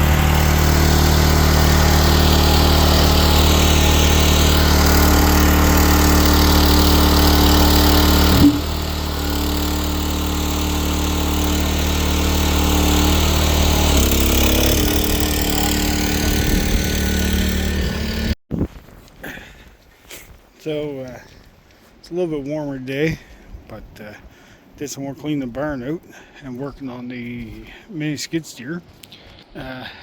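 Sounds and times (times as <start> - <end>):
small engine running: 0.0 - 18.4.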